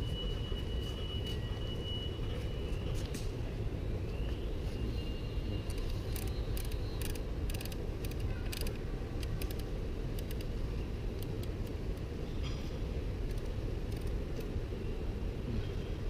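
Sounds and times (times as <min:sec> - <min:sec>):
sharp mechanical clicks: 0:05.7 - 0:10.5, 0:13.2 - 0:14.6.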